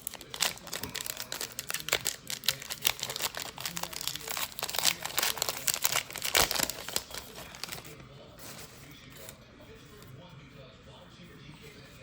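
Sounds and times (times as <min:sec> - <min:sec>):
crinkling of card pack wrappers: 0:00.0 - 0:09.3.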